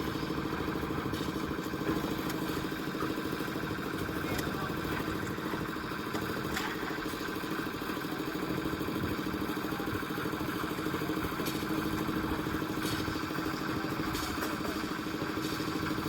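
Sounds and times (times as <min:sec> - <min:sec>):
concrete mixer engine running: 0:00.0 - 0:16.0.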